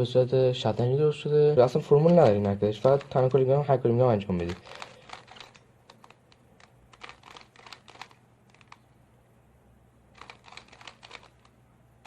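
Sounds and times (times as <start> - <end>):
plastic puzzle cube clicking: 4.5 - 8.8, 10.2 - 11.6.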